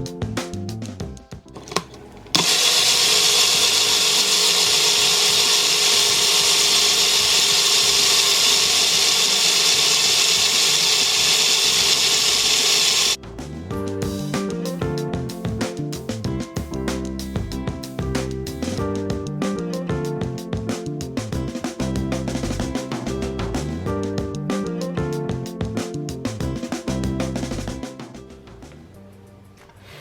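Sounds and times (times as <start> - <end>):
background music: 0.0 - 2.4, 13.2 - 30.0
electric blender running: 1.7 - 13.2.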